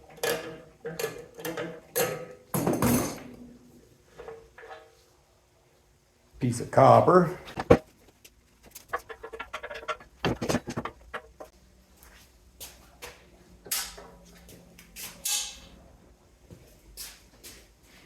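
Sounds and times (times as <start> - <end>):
metal clinking and rattling: 8.7 - 11.5.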